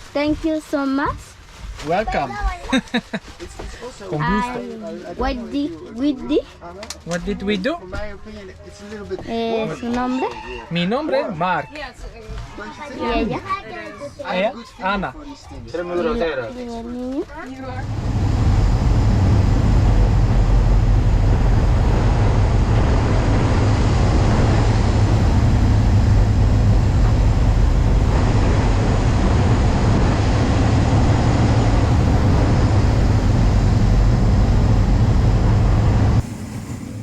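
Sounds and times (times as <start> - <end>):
boat engine rumble and rush: 17.4 - 37.0.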